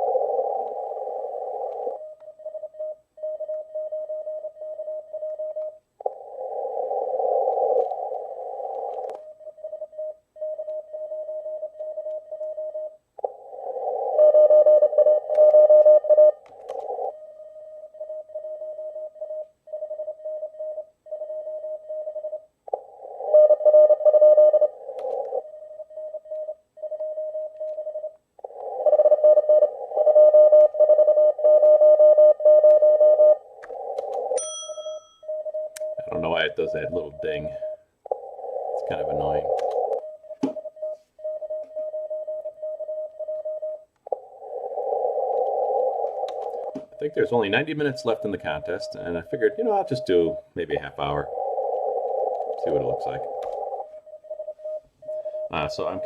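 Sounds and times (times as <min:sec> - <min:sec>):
morse code tone keyed on and off: 0:14.1 - 0:22.4, 0:23.2 - 0:28.2, 0:28.8 - 0:44.4.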